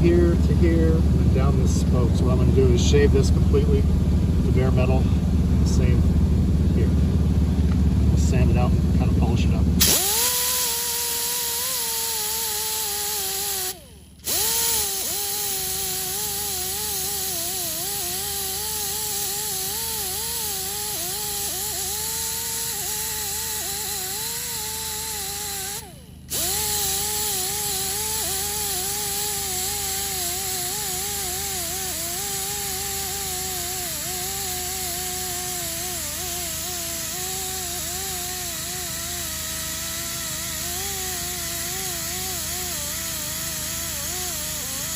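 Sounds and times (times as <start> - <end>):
power tool disc whining on metal: 9.8 - 44.9.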